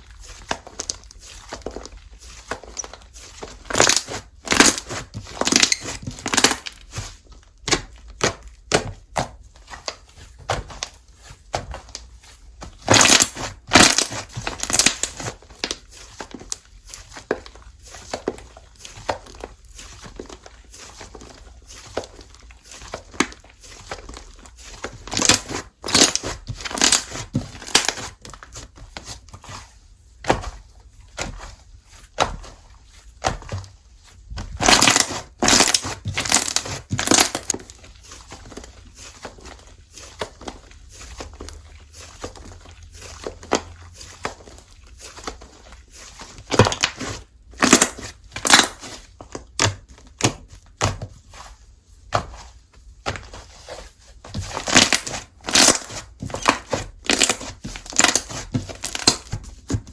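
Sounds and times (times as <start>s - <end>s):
slime crackling and popping: 0.1s - 8.8s, 12.7s - 18.2s, 24.0s - 28.2s, 34.4s - 37.8s, 46.4s - 49.8s, 54.5s - 59.7s.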